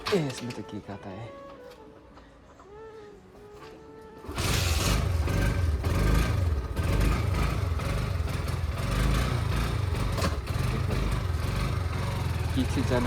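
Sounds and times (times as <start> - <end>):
motorcycle engine starting and running: 4.2 - 13.0.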